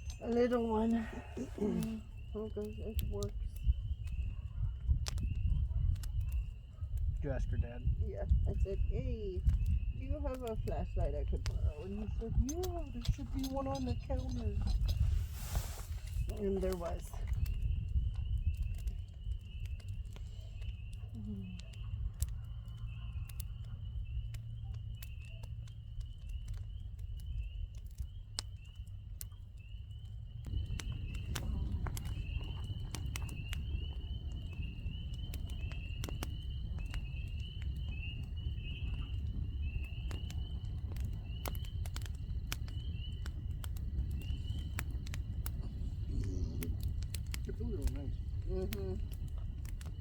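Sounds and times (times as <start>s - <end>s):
night insects chirping: 0.0s - 50.0s
low rumble: 29.9s - 50.0s.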